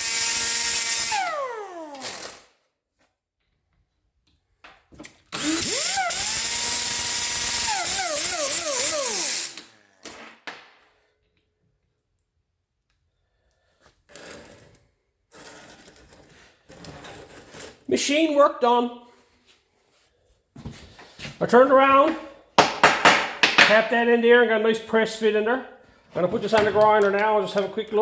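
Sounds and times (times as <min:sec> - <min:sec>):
electric lathe motor whine: 0:05.4 - 0:09.6
clicks and knocks: 0:26.5 - 0:28.0.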